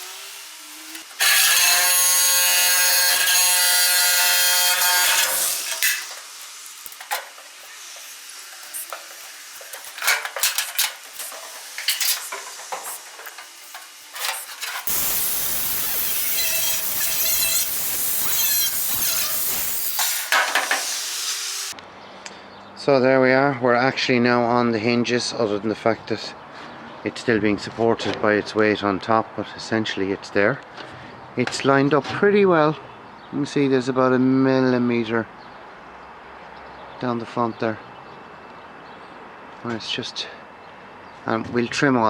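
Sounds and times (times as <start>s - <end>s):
power tool cutting metal: 0.0s - 21.8s.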